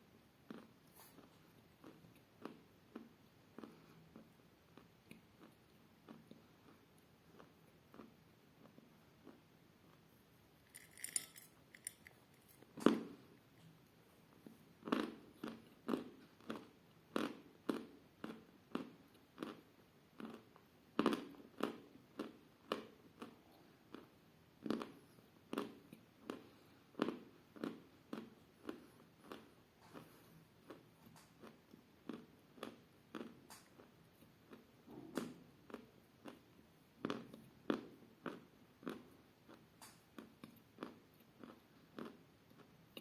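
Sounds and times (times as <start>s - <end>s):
person chewing chalk: 0.4s - 10.0s, 20.2s - 34.7s, 35.7s - 43.0s.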